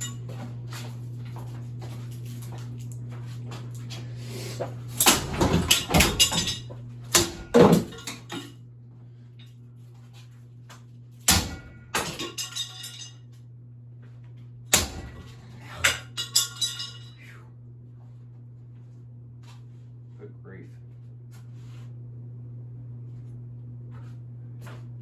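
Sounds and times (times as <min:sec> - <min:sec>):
steady low hum: 0:00.0 - 0:25.0
metal fan blades clanking: 0:04.9 - 0:08.6, 0:11.3 - 0:13.2, 0:14.7 - 0:17.2.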